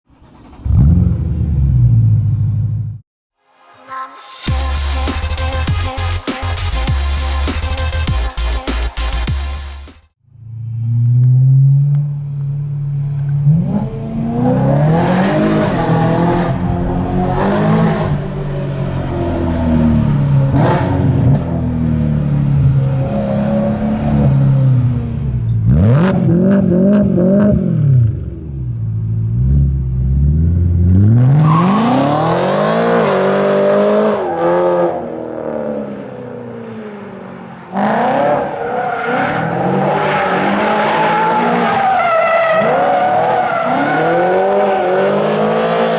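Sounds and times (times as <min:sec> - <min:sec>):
car engine revving: 0:04.5 - 0:36.0.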